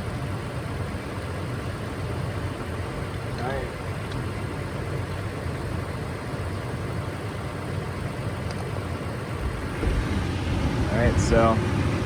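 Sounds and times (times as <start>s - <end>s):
low engine-like rumble: 0.0s - 12.0s.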